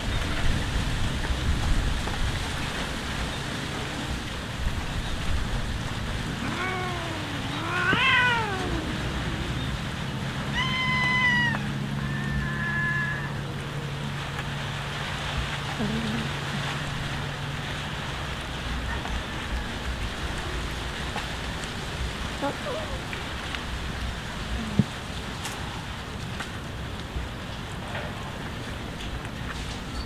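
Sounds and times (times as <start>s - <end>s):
background hiss: 0.0s - 12.4s
cats meowing: 6.3s - 13.5s.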